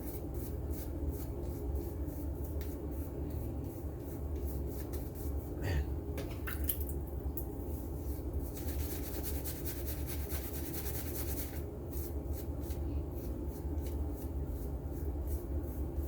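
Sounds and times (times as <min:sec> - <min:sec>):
shaving brush rubbing lather: 0:08.0 - 0:16.0.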